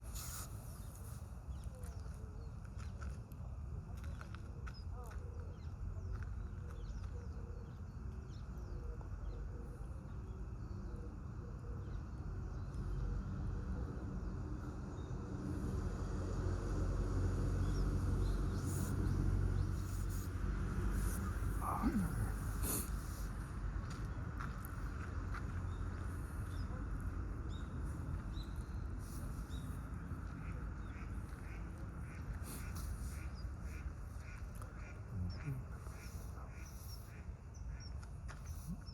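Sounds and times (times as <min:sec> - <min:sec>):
low background rumble: 0:00.8 - 0:36.7
birds chirping: 0:17.6 - 0:23.3, 0:27.5 - 0:38.9.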